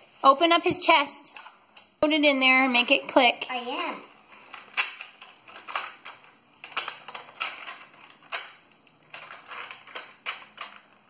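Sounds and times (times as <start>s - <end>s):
plastic toy parts clicking: 4.5s - 11.0s.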